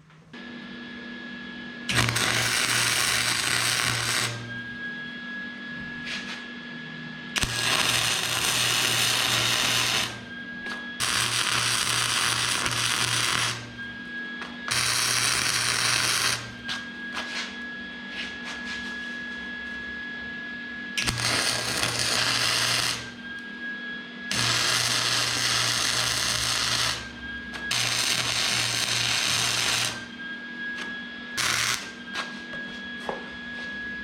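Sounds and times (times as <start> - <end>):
electric welder arc noise: 1.9 - 4.8, 7.4 - 17.0, 21.0 - 23.5, 24.3 - 30.2, 30.8 - 32.4.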